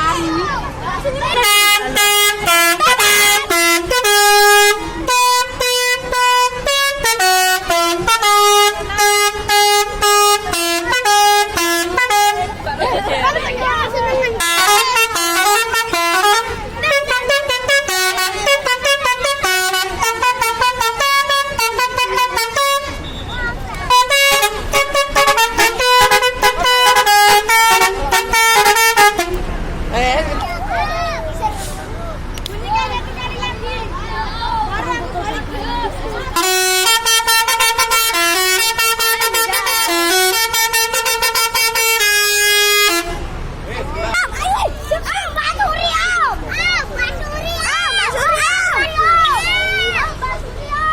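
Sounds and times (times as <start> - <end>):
musical air horn melody: 1.3 - 12.6, 14.4 - 23.2, 23.9 - 29.4, 36.2 - 43.3.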